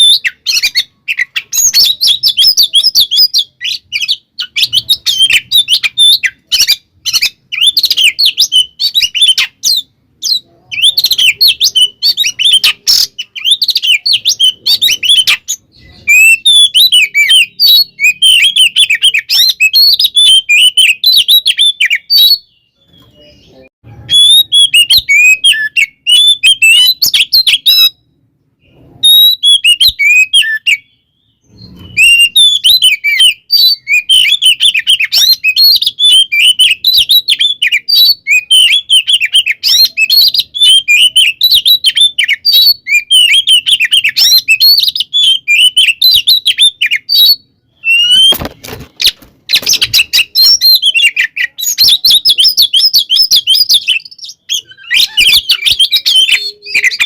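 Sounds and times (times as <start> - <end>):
magpie-robin singing: 0.0 - 57.0.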